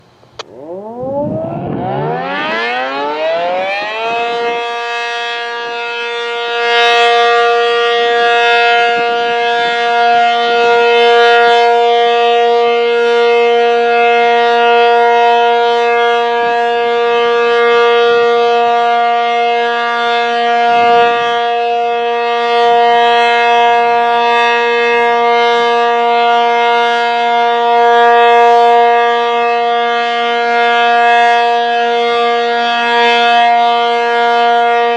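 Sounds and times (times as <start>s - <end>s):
warning siren winding up: 0.3s - 22.6s.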